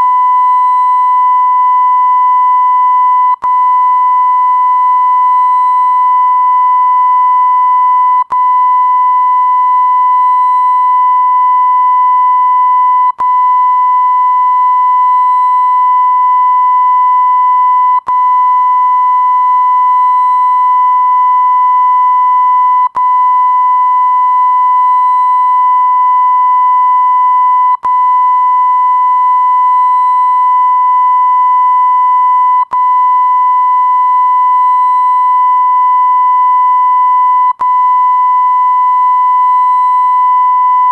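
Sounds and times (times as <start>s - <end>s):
censor beep tone: 0.0s - 40.9s.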